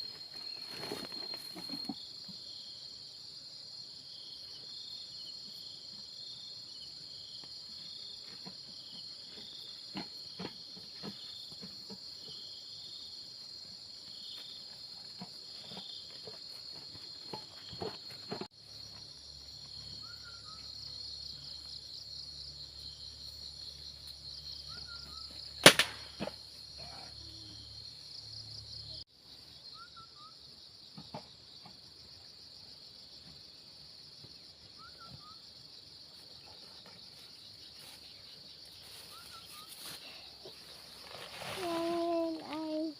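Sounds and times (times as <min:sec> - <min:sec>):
crickets trilling: 0:00.0 - 0:42.9
sharp crack: 0:25.6 - 0:26.4.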